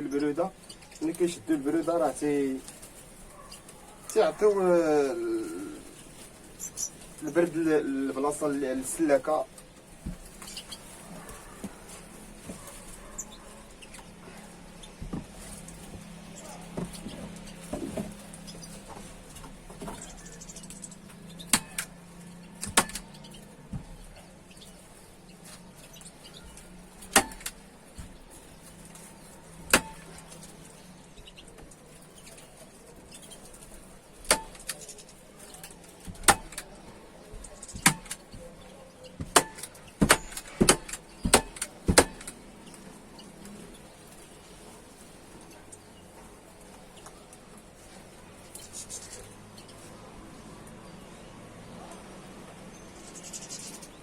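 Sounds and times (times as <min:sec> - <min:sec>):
sharp clicks and knocks: 0:22.6 - 0:24.0, 0:37.4 - 0:38.4, 0:39.2 - 0:42.8.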